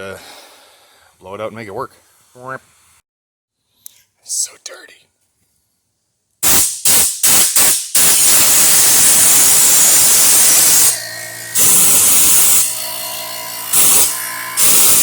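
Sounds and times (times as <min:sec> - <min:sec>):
compressed air blasts hissing: 0:06.4 - 0:12.8, 0:13.7 - 0:15.0.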